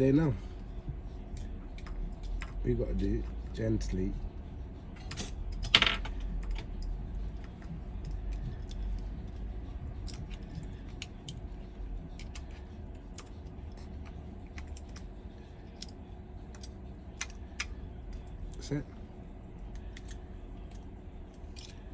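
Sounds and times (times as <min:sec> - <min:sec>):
faint steady hum: 0:00.0 - 0:21.9
small tools clicking and tapping: 0:12.1 - 0:15.1, 0:15.7 - 0:18.6, 0:19.6 - 0:21.9.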